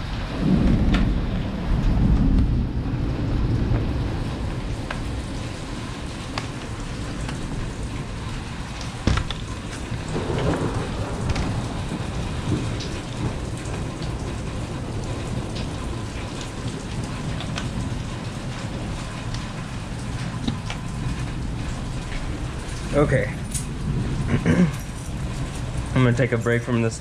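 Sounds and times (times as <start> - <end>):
heavy rain falling: 0.0 - 27.0
low rumble: 0.0 - 27.0.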